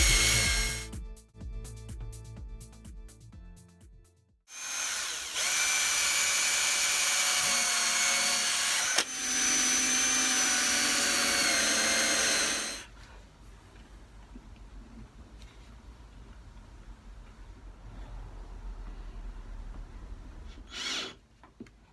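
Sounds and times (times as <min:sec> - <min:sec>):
power drill boring into log: 0:00.0 - 0:00.9, 0:04.5 - 0:12.8.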